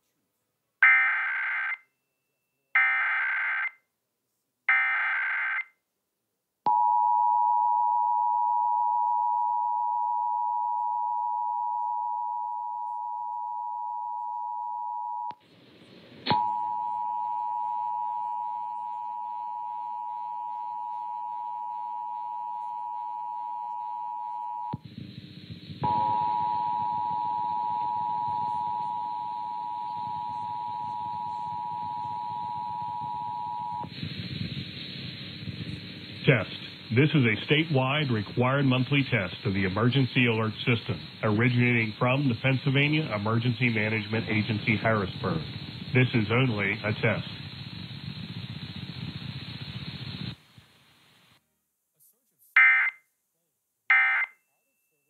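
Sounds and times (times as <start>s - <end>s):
buzzy hum: 24.8s - 50.5s
data bursts: 25.8s - 50.3s
hiss: 33.9s - 50.7s.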